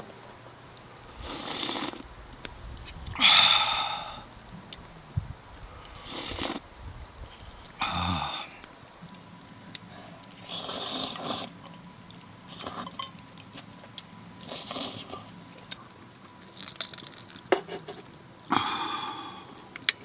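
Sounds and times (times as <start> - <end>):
person slurping: 1.2 - 2.0, 5.9 - 6.6, 10.4 - 11.6, 14.4 - 15.2.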